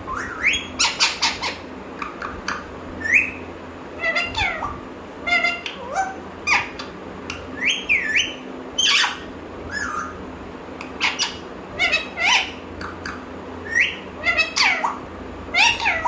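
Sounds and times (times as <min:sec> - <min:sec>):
parrot squawking: 0:00.1 - 0:03.4, 0:04.0 - 0:10.2, 0:10.9 - 0:12.6, 0:13.6 - 0:16.0.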